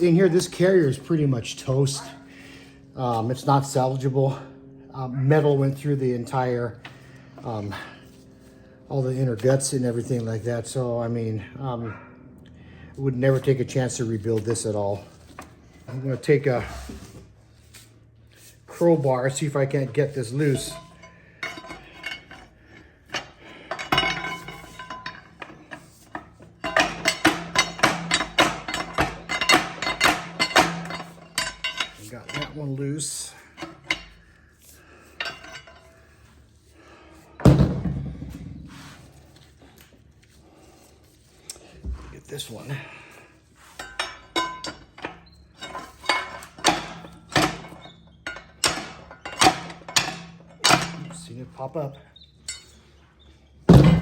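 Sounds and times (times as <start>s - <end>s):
crowbar knocking on metal: 53.7s - 54.0s.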